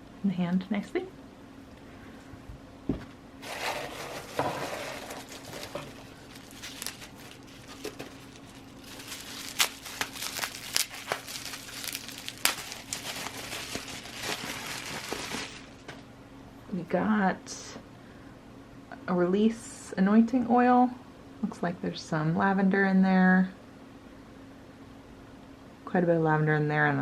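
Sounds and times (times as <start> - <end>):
packaging crinkling and rustling: 3.4 - 16.0.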